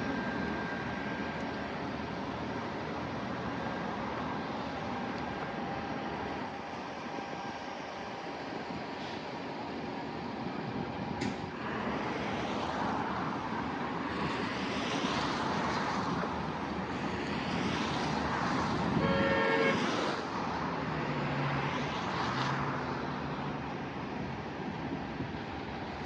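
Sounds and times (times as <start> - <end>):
road traffic passing: 0.0 - 26.0
vehicle horn: 18.9 - 20.1.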